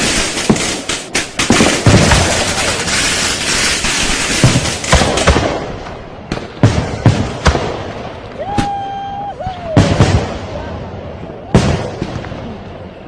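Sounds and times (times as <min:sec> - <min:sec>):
firework whistling: 0:00.0 - 0:05.3
fireworks sharp bangs: 0:00.0 - 0:08.8, 0:09.5 - 0:13.0
fireworks crackling: 0:00.0 - 0:13.0.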